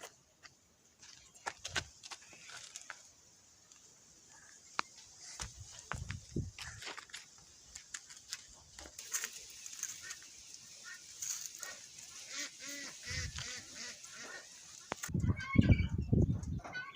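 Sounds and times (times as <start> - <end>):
high background hiss: 0.1 - 15.1
poultry calling: 9.7 - 16.0, 16.6 - 16.9.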